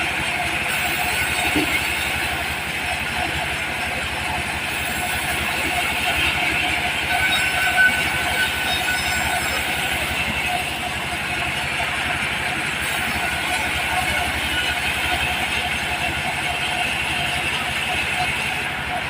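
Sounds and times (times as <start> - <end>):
diesel engine chugging: 0.0 - 19.0
brief high squeal: 6.6 - 10.8.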